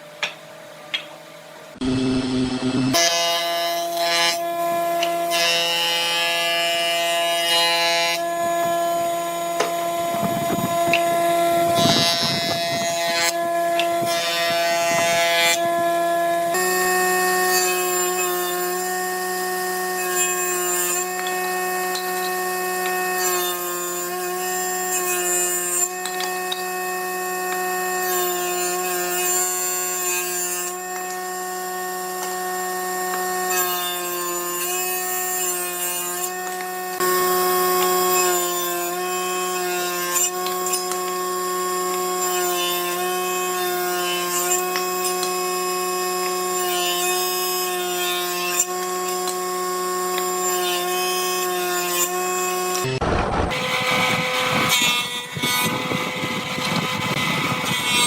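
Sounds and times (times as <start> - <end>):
woodworking power tool whining: 1.8 - 58.0.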